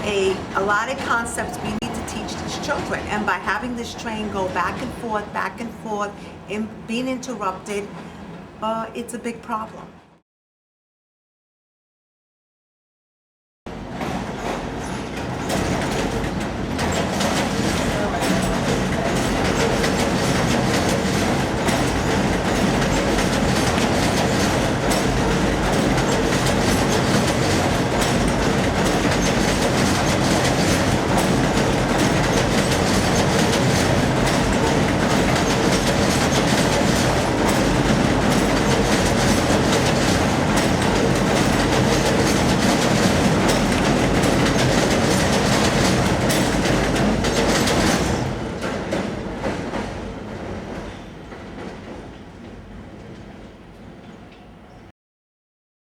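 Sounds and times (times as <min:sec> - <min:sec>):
subway train rumbling past: 0:00.0 - 0:10.2, 0:13.7 - 0:54.9
wheel clatter over rail joints: 0:13.7 - 0:53.4.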